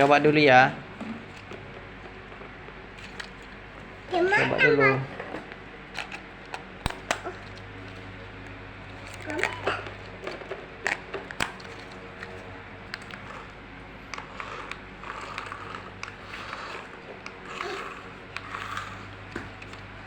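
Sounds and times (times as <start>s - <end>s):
toy race car running: 14.1s - 19.1s.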